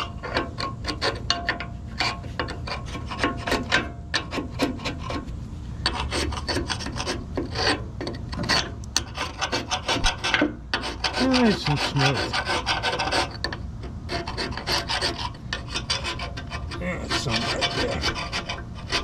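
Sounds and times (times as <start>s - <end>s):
hand scraping metal surface: 0.0s - 19.0s.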